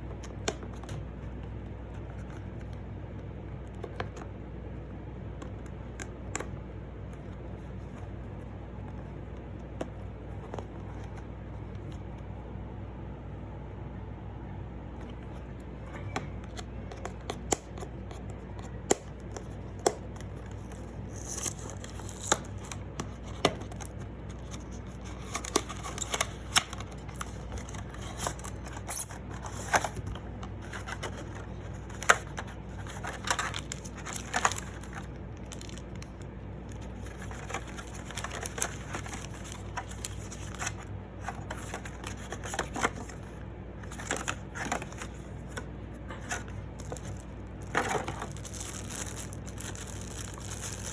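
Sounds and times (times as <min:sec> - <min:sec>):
steady low hum: 0:00.0 - 0:50.9
packaging being handled and opened: 0:15.0 - 0:50.9.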